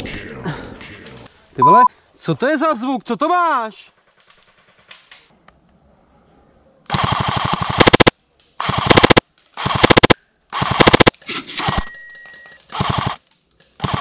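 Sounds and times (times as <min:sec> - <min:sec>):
automatic airsoft gunfire: 0:06.9 - 0:11.2, 0:12.7 - 0:13.2, 0:13.8 - 0:14.0.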